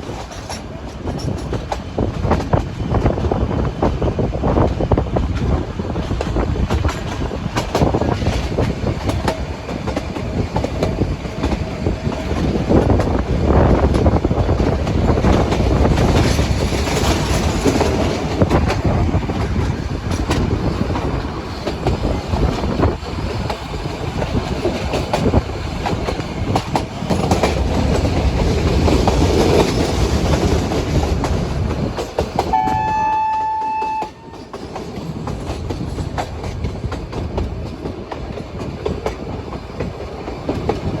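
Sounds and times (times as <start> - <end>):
train wheels clattering: 0.0 - 41.0
train horn: 32.5 - 34.6.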